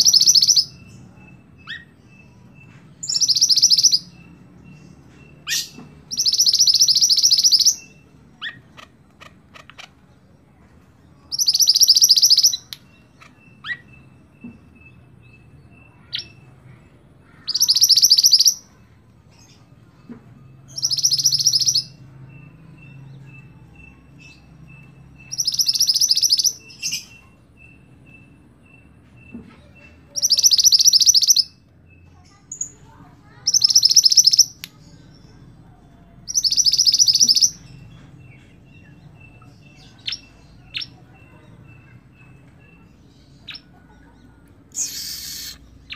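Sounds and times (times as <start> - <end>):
songbird high trills: 44.7 - 45.9.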